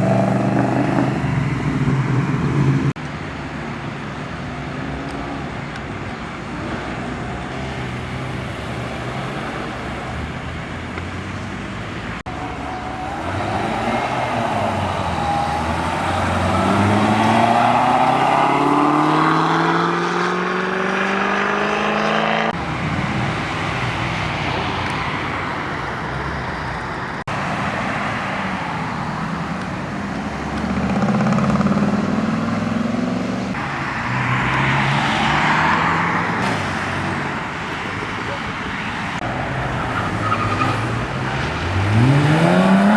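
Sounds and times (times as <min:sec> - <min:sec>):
cars accelerating hard: 0:00.0 - 0:03.0, 0:07.5 - 0:26.4, 0:27.2 - 0:42.9
car rushing past: 0:12.2 - 0:25.6, 0:27.3 - 0:37.5.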